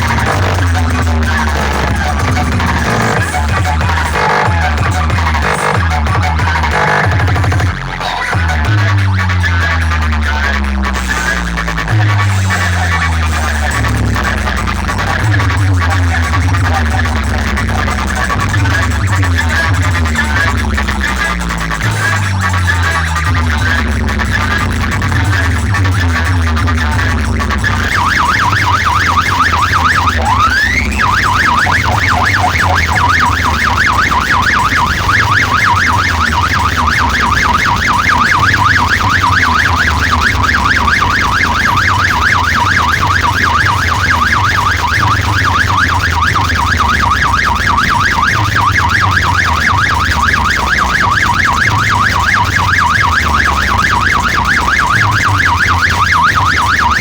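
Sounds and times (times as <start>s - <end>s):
warbling siren effect: 0.0s - 8.7s, 22.5s - 57.0s
heavy pulsing bass: 0.0s - 57.0s.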